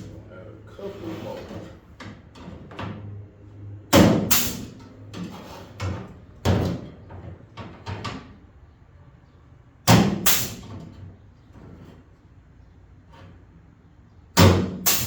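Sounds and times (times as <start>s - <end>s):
spot welder clacks and snaps: 4.3s - 4.8s, 10.2s - 10.7s, 14.7s - 15.0s.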